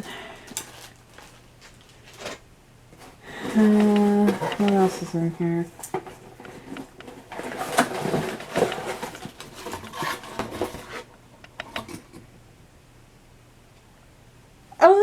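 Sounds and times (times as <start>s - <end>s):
packaging rustling and crinkling: 0.4s - 2.4s, 3.0s - 11.1s.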